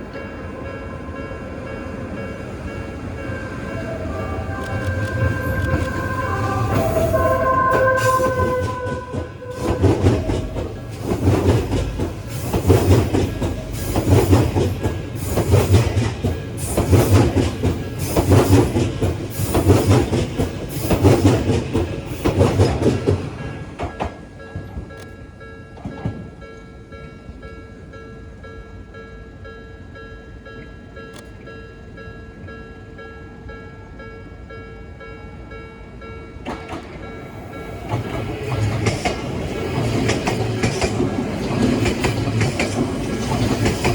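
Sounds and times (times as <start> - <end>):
held tones changing pitch: 3.2 - 10.6
train wheels clacking over rail joints: 7.8 - 25.0, 36.4 - 43.9.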